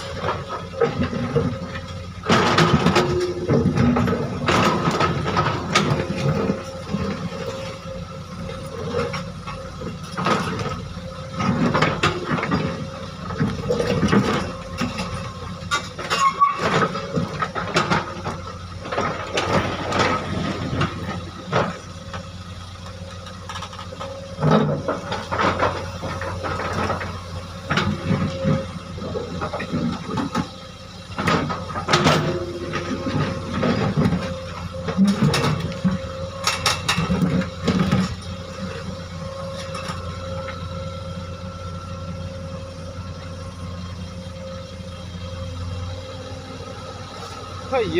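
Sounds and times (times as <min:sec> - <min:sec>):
excavator diesel engine: 0:00.0 - 0:47.9
metallic squeal: 0:16.0 - 0:17.0.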